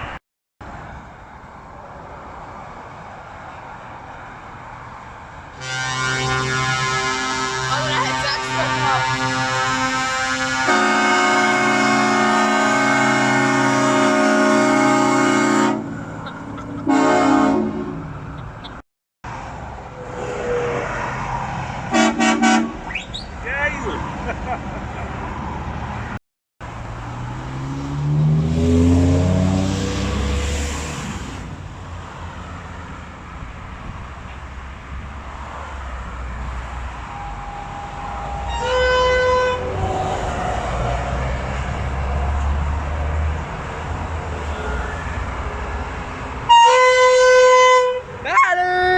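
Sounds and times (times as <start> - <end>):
truck air horns chord: 5.6 - 18.2, 21.9 - 23.1, 36.9 - 41.3, 46.4 - 48.2
truck engine revving past: 24.0 - 33.0, 34.5 - 46.4.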